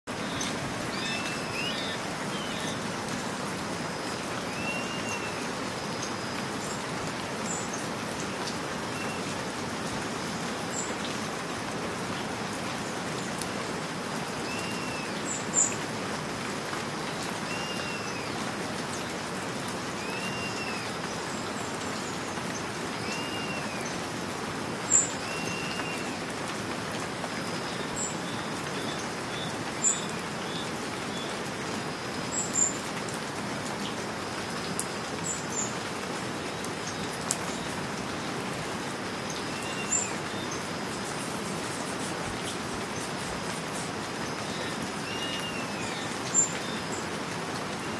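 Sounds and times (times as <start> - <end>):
rain pattering in woodland: 0.1 - 47.9
bird chirping: 0.2 - 2.8.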